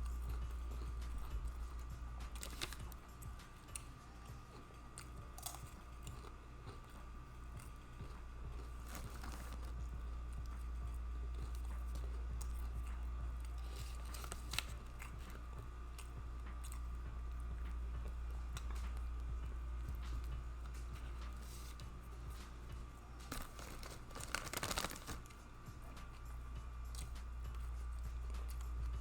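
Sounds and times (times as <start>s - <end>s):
person chewing with wet smacking: 0.0s - 28.9s
steady low hum: 0.0s - 29.0s.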